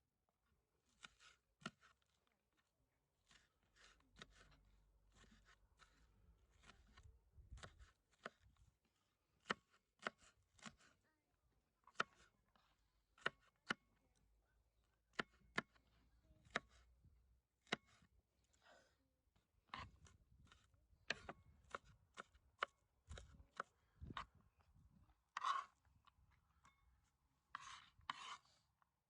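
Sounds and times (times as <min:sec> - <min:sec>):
knife chopping on cutting board: 0:09.4 - 0:10.9, 0:13.2 - 0:13.8, 0:17.6 - 0:18.0, 0:20.4 - 0:24.2.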